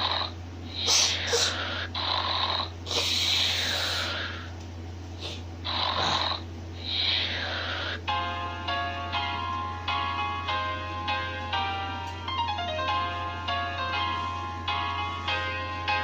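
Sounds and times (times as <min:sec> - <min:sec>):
raspy snoring: 0:00.0 - 0:04.4, 0:05.6 - 0:08.0.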